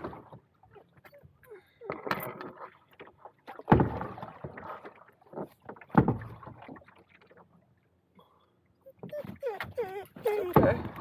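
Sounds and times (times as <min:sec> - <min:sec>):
small water splashes: 0:01.8 - 0:08.1
paddle strokes in water: 0:01.9 - 0:07.7
canoe hull knocks: 0:03.7 - 0:04.2, 0:05.4 - 0:06.5, 0:10.4 - 0:11.0.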